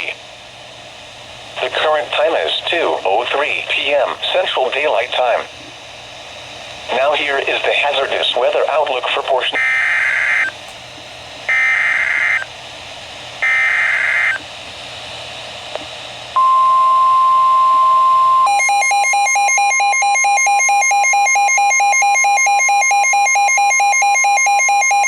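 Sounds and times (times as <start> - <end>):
steady warning alarm tone: 9.4 - 10.6, 11.5 - 12.5, 13.4 - 14.4, 16.4 - 25.0
radio alarm beeping rapidly: 9.5 - 10.6, 11.5 - 12.5, 13.4 - 14.4, 16.4 - 25.0
harsh digital screeches: 9.6 - 10.5, 11.5 - 12.4, 13.4 - 14.4.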